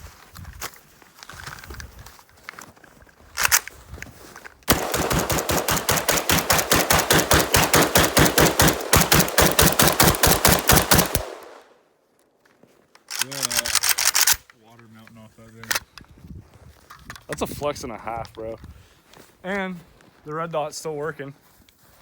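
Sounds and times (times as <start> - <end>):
rapid rifle fire: 4.7 - 11.7
single rifle shots: 4.7 - 11.8.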